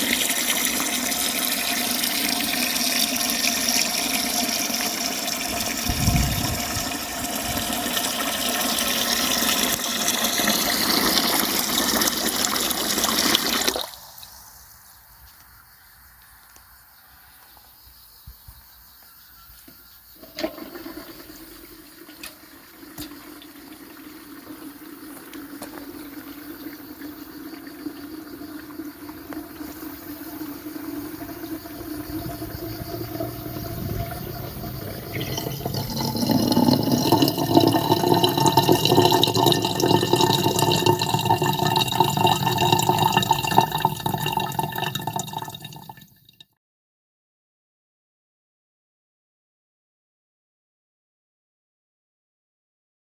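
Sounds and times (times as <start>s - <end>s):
faucet water splashing into sink: 0.0s - 14.0s, 20.2s - 46.4s.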